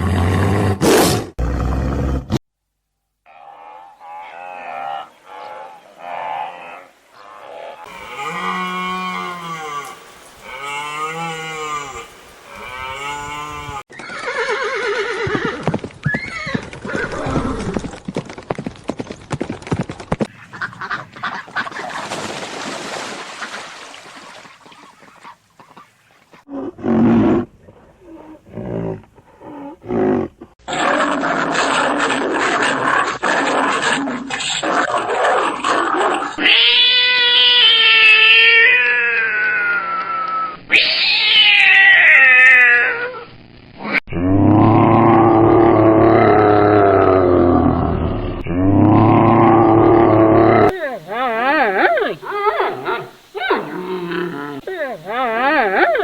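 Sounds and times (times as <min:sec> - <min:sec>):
rising and falling animal calls: 0:36.4 - 0:56.0.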